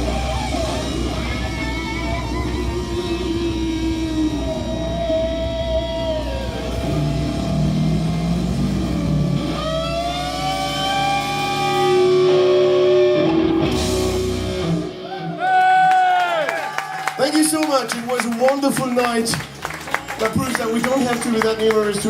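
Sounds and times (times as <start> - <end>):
electric guitar bending notes: 0.0 - 15.5
rock band playing: 0.0 - 22.0.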